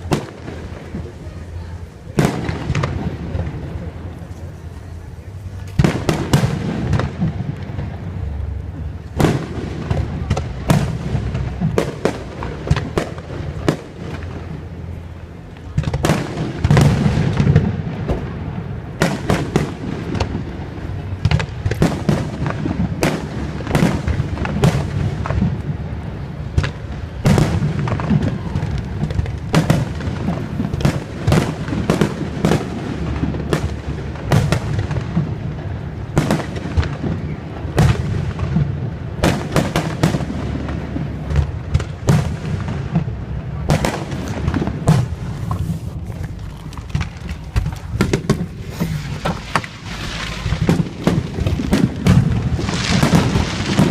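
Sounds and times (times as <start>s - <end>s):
fireworks bangs: 0.0s - 53.9s
low rumbling: 40.3s - 53.9s.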